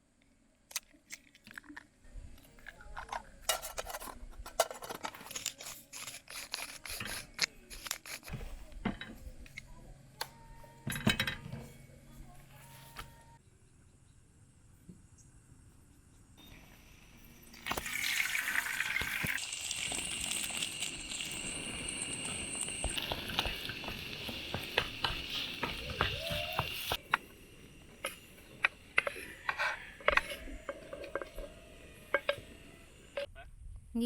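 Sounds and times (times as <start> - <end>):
water running: 17.4 - 27.0.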